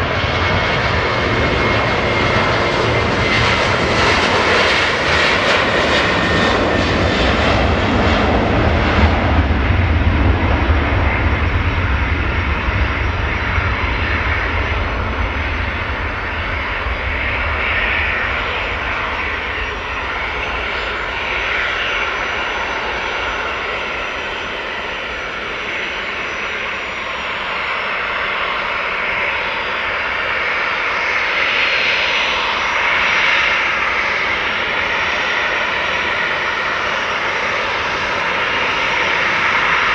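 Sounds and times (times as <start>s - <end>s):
jet engines running with high whine: 0.0s - 39.9s.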